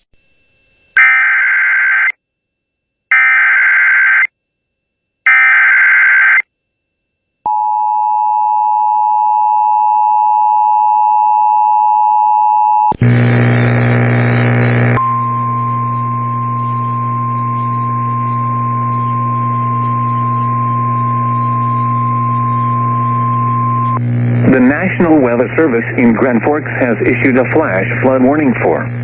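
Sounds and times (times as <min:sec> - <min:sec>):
deep hum: 0:12.9 - 0:29.0.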